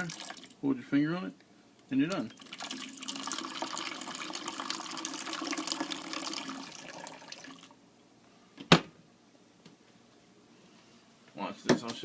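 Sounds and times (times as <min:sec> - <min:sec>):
water running into container: 0:00.0 - 0:00.6, 0:02.3 - 0:07.8.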